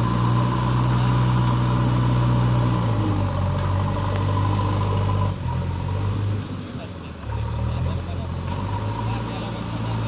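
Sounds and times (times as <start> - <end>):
diesel engine running: 0.0 - 10.0.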